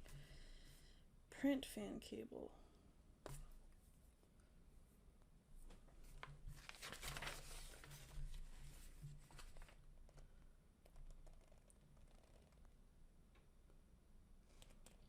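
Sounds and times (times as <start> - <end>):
crinkling rustle: 5.6 - 9.8.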